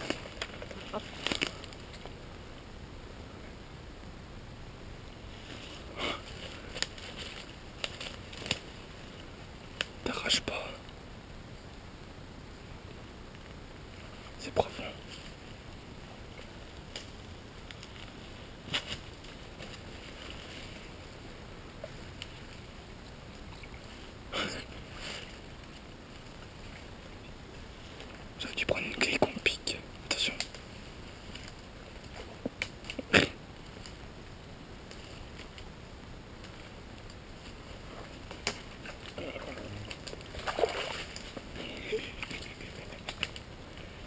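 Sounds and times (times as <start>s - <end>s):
footsteps splashing in water: 40.3s - 41.3s.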